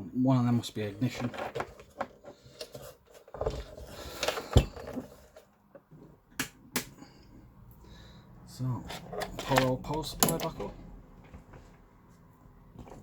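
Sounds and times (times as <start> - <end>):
rustling of plastic parts: 0.8 - 6.2, 8.7 - 11.9.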